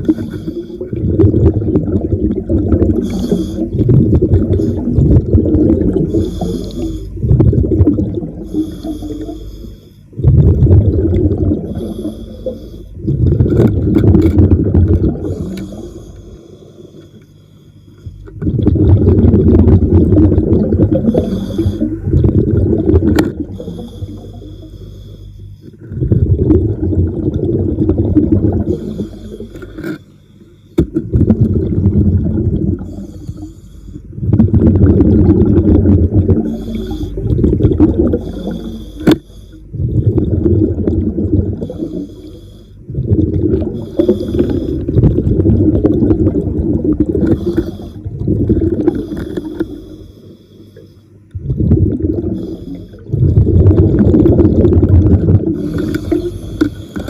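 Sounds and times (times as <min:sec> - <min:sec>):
regulator inhale hiss: 0:00.0 - 0:00.8, 0:03.0 - 0:03.8, 0:06.0 - 0:07.2, 0:08.4 - 0:10.2, 0:11.7 - 0:13.0, 0:15.2 - 0:18.3, 0:21.0 - 0:22.2, 0:23.4 - 0:25.8, 0:28.7 - 0:30.8, 0:32.8 - 0:34.1, 0:36.4 - 0:37.3, 0:38.2 - 0:39.8, 0:41.6 - 0:42.9, 0:43.8 - 0:45.0, 0:47.2 - 0:48.1, 0:48.8 - 0:51.2, 0:52.3 - 0:53.1, 0:55.6 - 0:57.0
exhaled bubbles gurgling underwater: 0:00.0 - 0:57.0.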